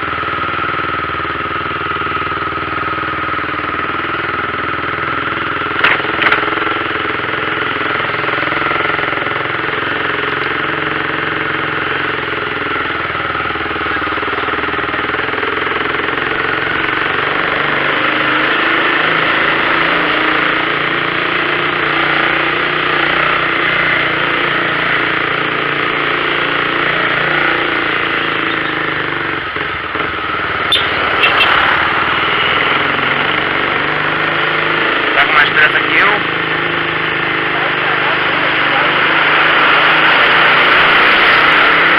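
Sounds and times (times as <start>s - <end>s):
diesel truck engine running: 0.0s - 41.9s.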